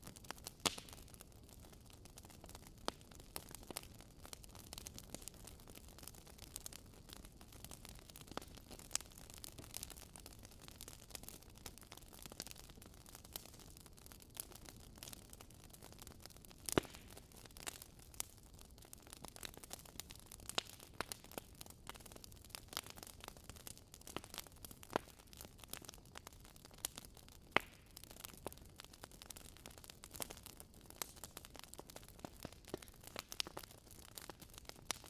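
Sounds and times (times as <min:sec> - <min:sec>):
wood fire crackling: 0:00.0 - 0:35.0.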